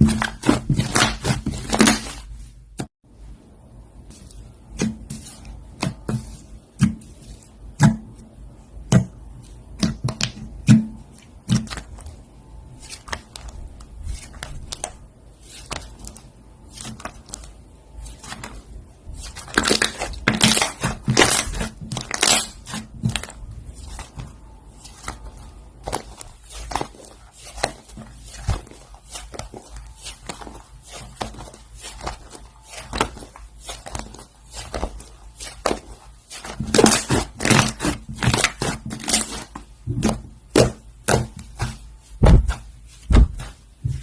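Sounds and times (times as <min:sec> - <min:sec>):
slime popping and crackling: 0:19.2 - 0:23.4, 0:25.8 - 0:42.5.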